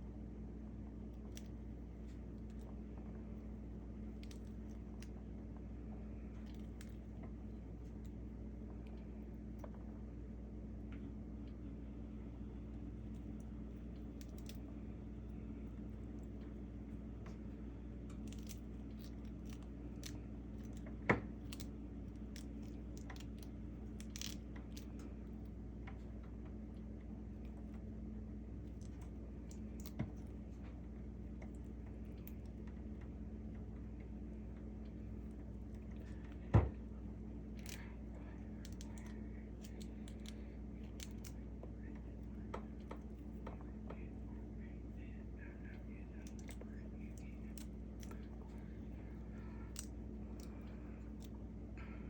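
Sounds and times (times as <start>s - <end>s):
steady low hum: 0.0s - 52.0s
light clicks and taps: 28.6s - 51.4s.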